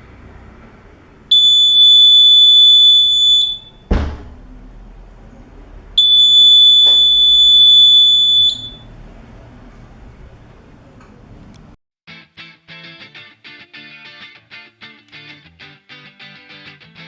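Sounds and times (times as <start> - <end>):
high piercing alarm buzzer: 1.3 - 3.8, 6.0 - 8.9
thump: 3.9 - 4.5.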